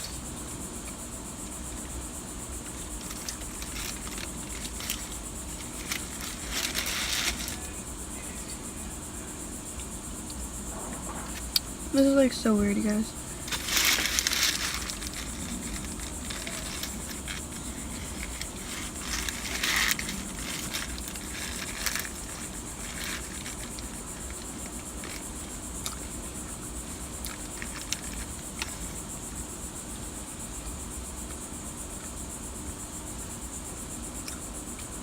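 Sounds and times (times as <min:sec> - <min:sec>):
wrapper crinkling: 0:03.0 - 0:07.7, 0:13.4 - 0:25.2.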